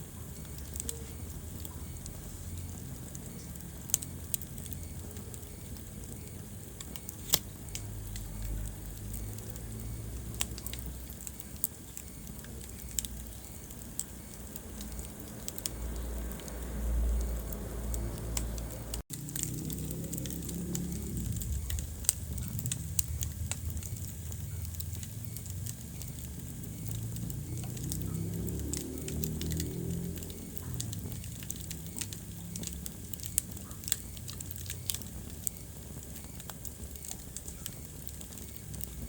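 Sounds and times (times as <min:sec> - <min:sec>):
low rumble of flames: 0:00.0 - 0:39.0
wood fire crackling and popping: 0:00.0 - 0:39.0.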